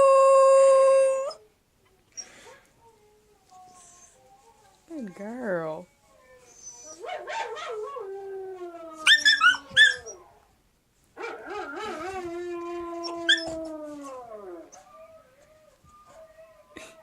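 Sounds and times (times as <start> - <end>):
puppy howling: 6.2 - 10.4, 11.2 - 16.8
puppy yelping: 9.0 - 10.2.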